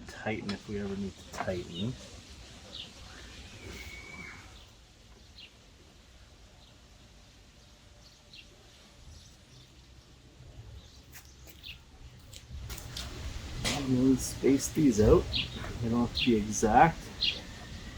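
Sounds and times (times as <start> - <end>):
faint bird chirps: 1.2 - 5.6, 14.9 - 17.9.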